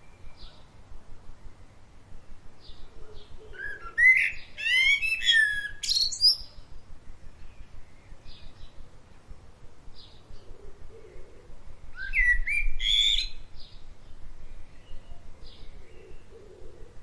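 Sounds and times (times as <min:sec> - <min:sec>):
blackbird singing: 0:00.0 - 0:00.7, 0:02.6 - 0:06.7, 0:07.3 - 0:08.9, 0:10.0 - 0:17.0.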